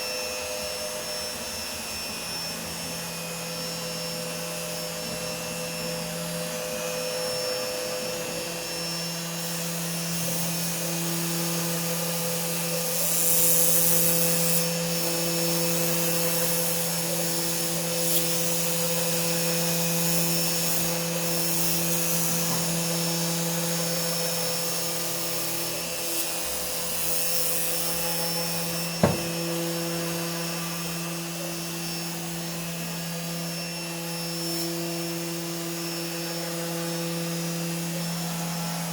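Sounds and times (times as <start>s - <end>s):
motor hum: 27.0s - 32.4s.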